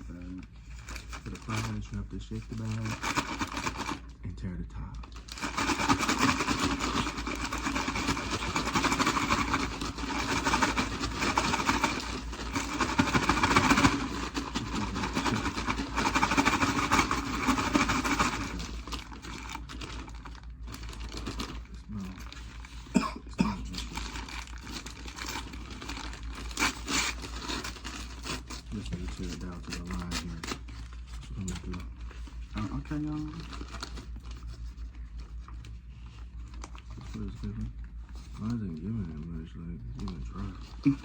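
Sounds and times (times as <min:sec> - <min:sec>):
fries rattling in paper bag: 0:00.0 - 0:41.0
paper handling with clicks: 0:23.6 - 0:38.7.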